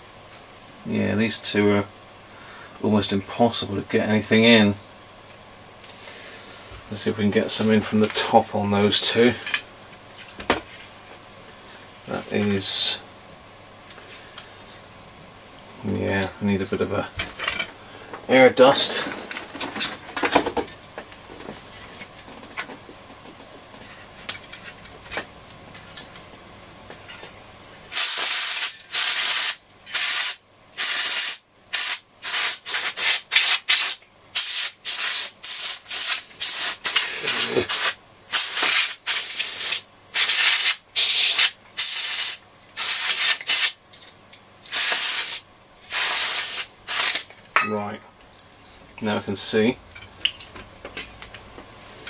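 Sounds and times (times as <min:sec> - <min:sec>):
compressed air hissing blasts: 0:27.9 - 0:43.8, 0:44.7 - 0:47.3.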